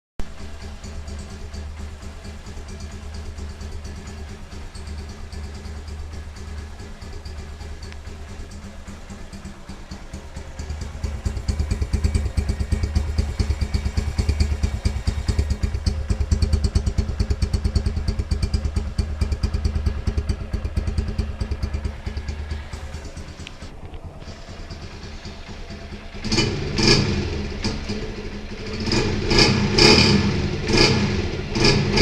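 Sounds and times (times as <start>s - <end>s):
motorcycle engine idling: 0.2s - 32.0s.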